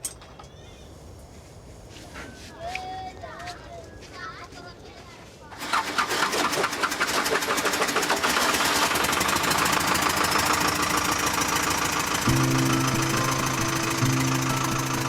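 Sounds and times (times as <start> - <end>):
small engine running: 5.6 - 15.0.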